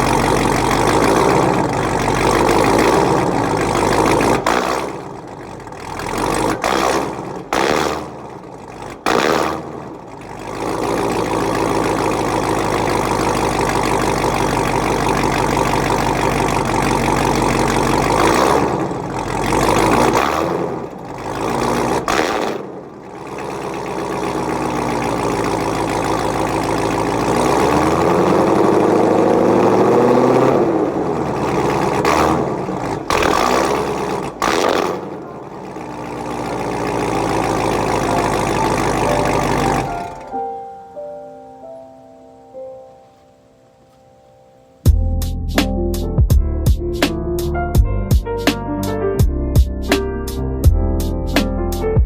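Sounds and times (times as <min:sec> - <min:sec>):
car engine revving: 0:00.0 - 0:40.4.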